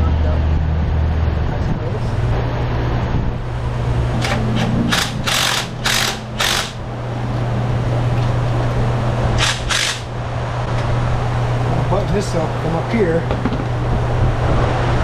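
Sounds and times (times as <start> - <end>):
low shop hum: 0.0 - 15.0
ratchet running nuts: 4.3 - 6.8, 9.4 - 10.1.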